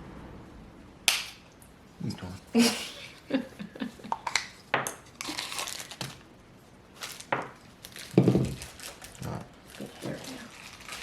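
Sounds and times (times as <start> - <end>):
plastic bag crinkling: 5.1 - 6.3, 6.9 - 11.0.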